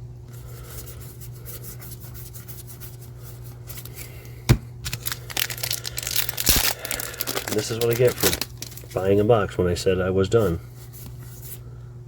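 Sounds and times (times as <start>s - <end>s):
steady low hum: 0.0s - 12.0s
cards sliding and rubbing: 10.4s - 11.6s.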